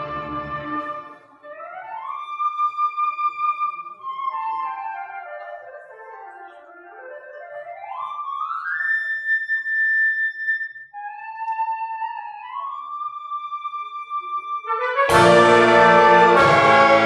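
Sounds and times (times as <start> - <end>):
solo orchestral instrument melody: 0.0 - 2.2, 14.6 - 17.0.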